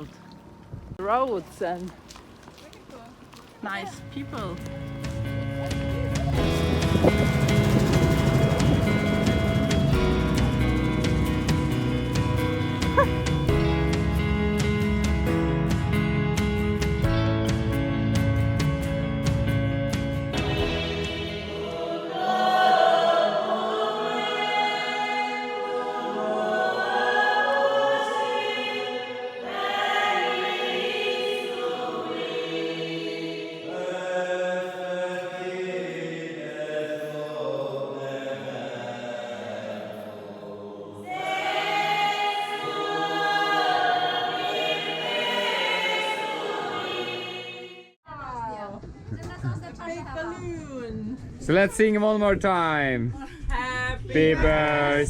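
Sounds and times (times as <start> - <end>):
choir singing: 5.2 - 14.2, 20.3 - 48.0.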